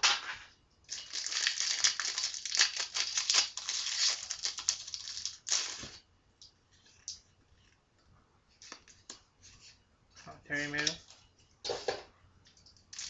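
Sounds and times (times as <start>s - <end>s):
foil wrapper crinkling and tearing: 0.9s - 6.0s.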